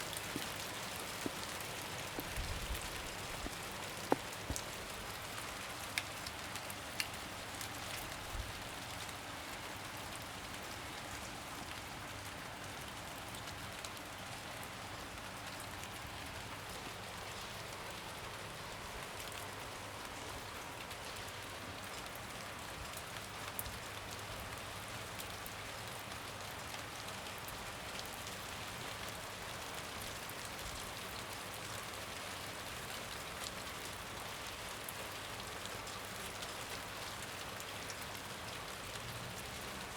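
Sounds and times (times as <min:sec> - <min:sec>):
water drips: 0:00.0 - 0:06.2
steady rain hiss: 0:00.0 - 0:39.9.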